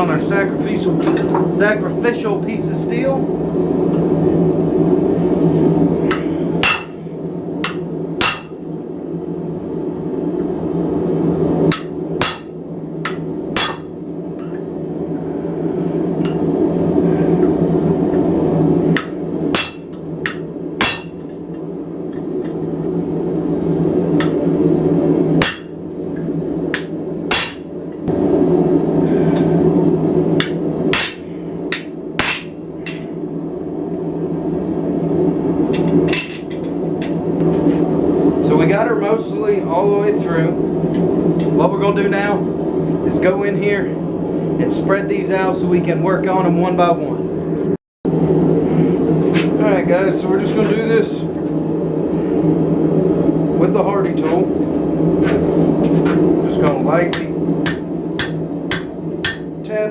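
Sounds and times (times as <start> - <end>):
hammer striking chisel on steel: 6.1 - 7.0, 7.6 - 8.6, 13.1 - 13.9, 19.0 - 21.4, 25.4 - 25.8, 26.8 - 27.8, 30.4 - 33.0, 57.1 - 59.7.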